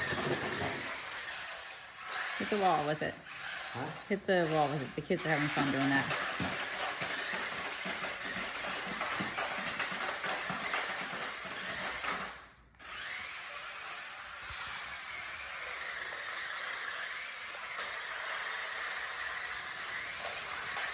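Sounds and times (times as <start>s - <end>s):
sharp knocks and clatter: 0.0s - 1.5s, 5.4s - 12.4s
toy car electric motors whining: 0.0s - 20.9s.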